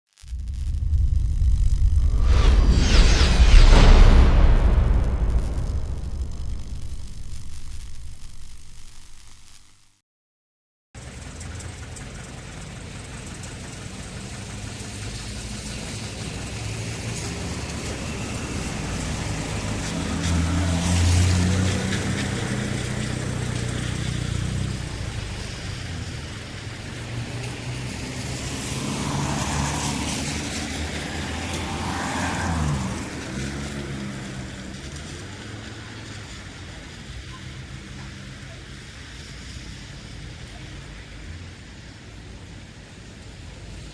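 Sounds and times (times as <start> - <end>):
vehicle passing close: 0.3 - 9.4
road noise: 0.3 - 9.6, 11.0 - 43.9
car engines running: 11.0 - 38.6.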